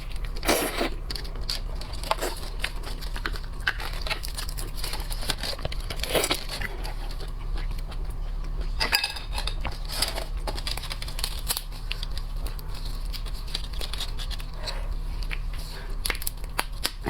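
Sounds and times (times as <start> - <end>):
steady low hum: 0.0 - 17.0
shells cracked and peeled: 9.3 - 14.6, 15.2 - 17.0.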